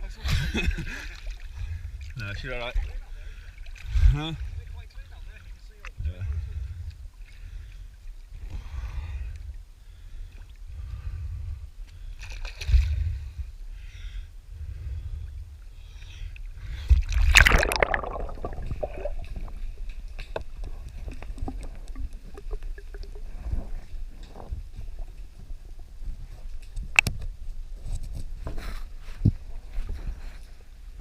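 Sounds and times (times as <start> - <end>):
water sloshing along a hull: 0.0 - 31.0
steady low rumble: 3.9 - 7.2, 8.3 - 15.8.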